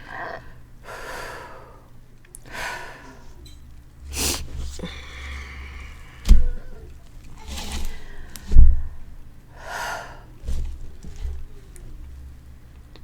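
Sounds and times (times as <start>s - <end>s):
woman breathing hard and gasping: 0.0s - 7.0s, 7.7s - 10.6s
snorting breaths: 0.0s - 12.7s
loud low thump: 5.8s - 6.8s.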